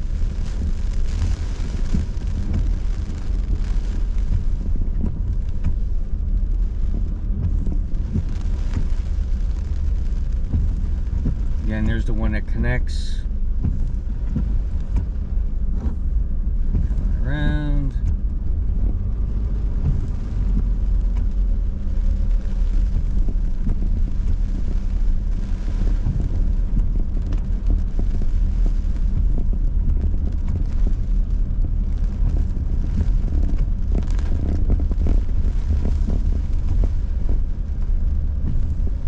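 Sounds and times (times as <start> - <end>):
engine and road noise in car: 0.0 - 39.0.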